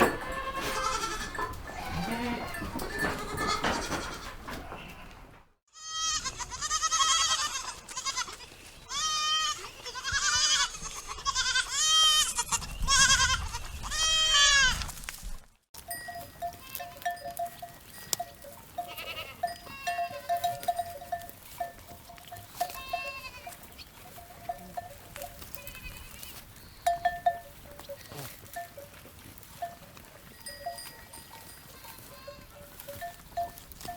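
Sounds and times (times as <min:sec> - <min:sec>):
neck bells clinking: 0:00.0 - 0:04.4, 0:15.8 - 0:33.9
goats bleating: 0:00.0 - 0:05.2, 0:05.8 - 0:14.8, 0:18.8 - 0:26.4, 0:31.5 - 0:33.5.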